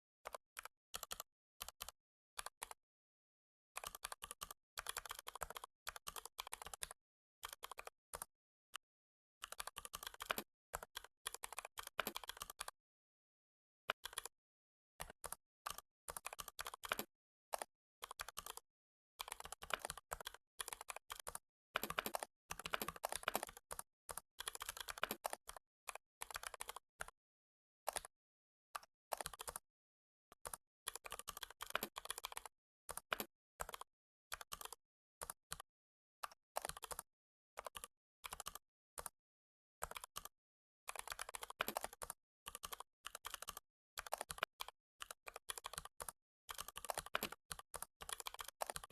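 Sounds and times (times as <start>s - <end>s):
computer keyboard typing: 3.8s - 8.3s, 9.5s - 12.6s, 14.0s - 14.3s, 15.0s - 18.6s, 19.2s - 25.6s, 26.2s - 26.8s, 27.9s - 28.1s, 29.1s - 29.6s, 30.4s - 35.4s, 36.6s - 37.1s, 40.9s - 48.9s.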